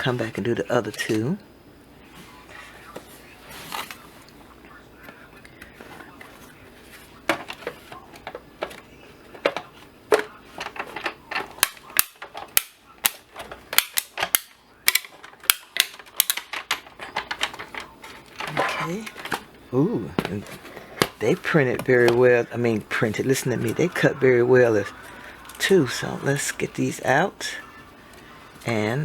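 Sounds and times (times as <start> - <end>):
die-cutting machine cracks and clicks: 10.7 - 17.8.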